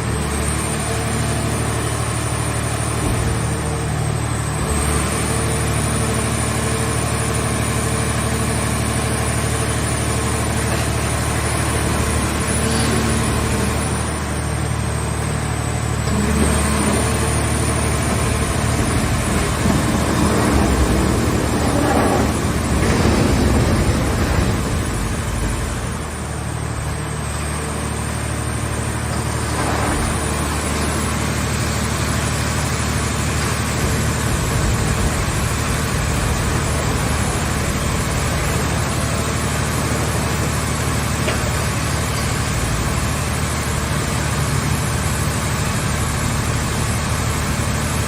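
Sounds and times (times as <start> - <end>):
baler engine running: 1.4 - 48.0.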